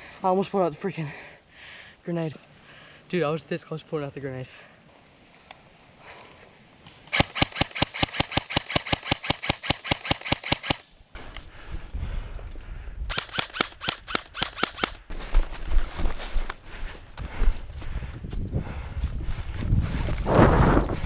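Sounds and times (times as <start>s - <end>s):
airsoft gun firing full auto: 7.1s - 10.8s, 13.1s - 15.0s.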